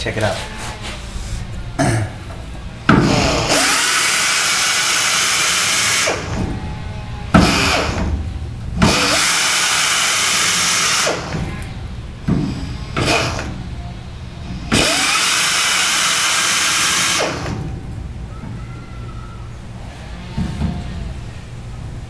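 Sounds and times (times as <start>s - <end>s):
short sharp air blasts: 2.9s - 6.6s, 8.8s - 11.4s
pneumatic air chisel hammering metal: 2.9s - 6.7s, 7.3s - 11.5s, 12.3s - 13.6s, 14.4s - 17.7s.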